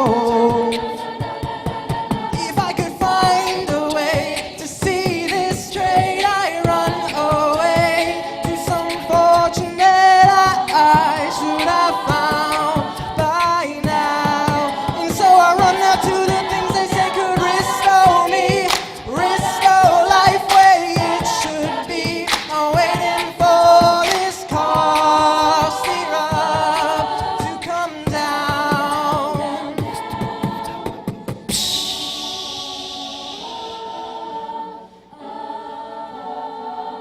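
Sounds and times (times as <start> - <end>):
vocal percussion beat: 0.0 - 34.8
a cappella group singing: 0.0 - 37.0
bright hiss: 31.5 - 34.5.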